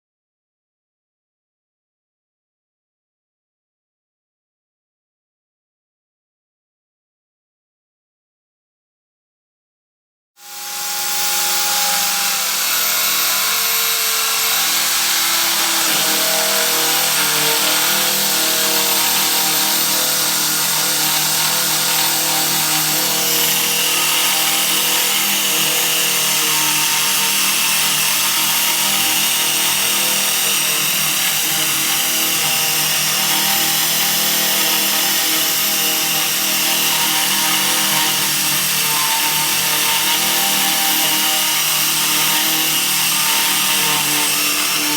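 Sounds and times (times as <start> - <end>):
power tool motor running: 10.4 - 44.9.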